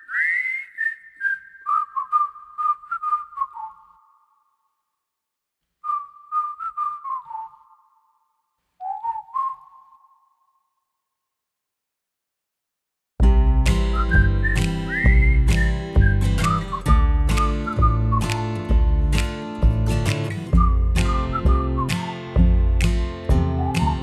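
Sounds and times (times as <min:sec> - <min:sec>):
whistled melody: 0:00.0 - 0:04.4, 0:05.8 - 0:08.2, 0:08.8 - 0:10.7, 0:13.6 - 0:24.0.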